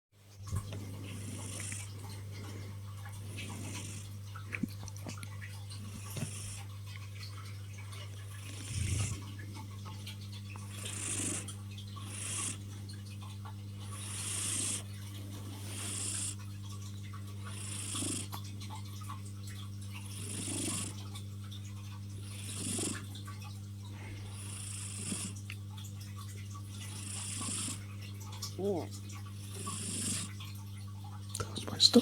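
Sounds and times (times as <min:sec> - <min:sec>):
steady low hum: 0:00.4 - 0:32.0
cat snoring: 0:00.7 - 0:04.1, 0:05.9 - 0:06.7, 0:08.3 - 0:09.2, 0:10.6 - 0:12.7, 0:13.9 - 0:16.4, 0:17.4 - 0:18.4, 0:20.0 - 0:21.0, 0:22.2 - 0:23.1, 0:24.0 - 0:25.4, 0:26.8 - 0:27.9, 0:29.4 - 0:30.4.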